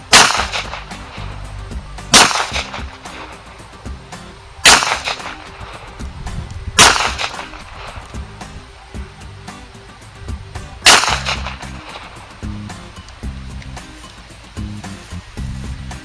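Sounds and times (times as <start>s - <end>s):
pistol shots with echo: 0.0s - 1.2s, 2.1s - 3.5s, 4.6s - 5.9s, 6.8s - 8.0s, 10.8s - 12.2s
funk music: 0.0s - 16.0s.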